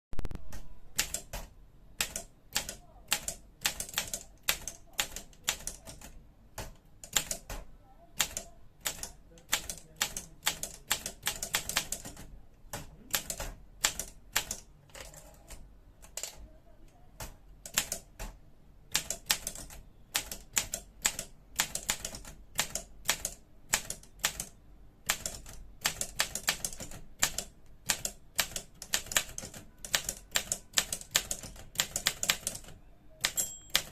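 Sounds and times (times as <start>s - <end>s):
typewriter keys striking: 25.1s - 33.9s.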